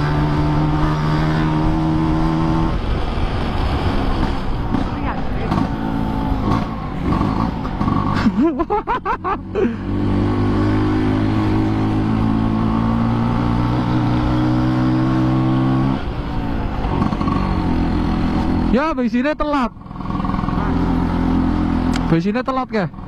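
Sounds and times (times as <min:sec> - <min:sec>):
two-stroke scooter engine running: 0:19.8 - 0:22.2.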